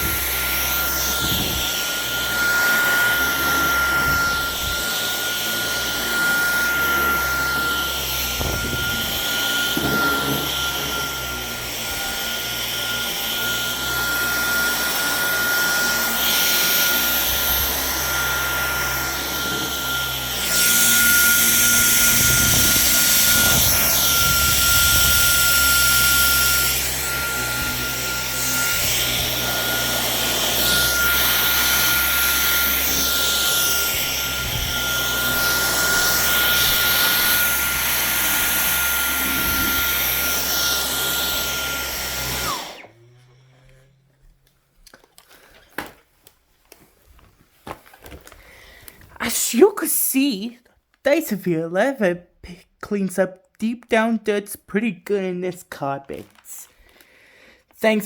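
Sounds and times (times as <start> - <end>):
vacuum cleaner running over carpet: 0.0 - 43.3.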